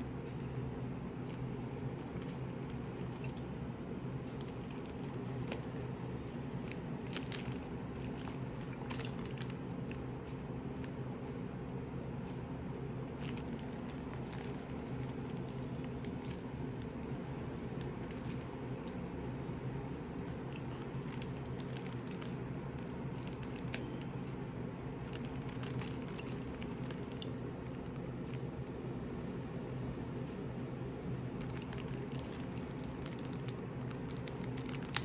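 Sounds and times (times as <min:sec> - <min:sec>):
low hum: 0:00.0 - 0:35.0
packaging clicks and rustles: 0:01.3 - 0:03.4, 0:04.4 - 0:05.8, 0:06.7 - 0:10.0, 0:13.1 - 0:19.0, 0:20.6 - 0:24.1, 0:25.0 - 0:28.4, 0:31.4 - 0:35.0.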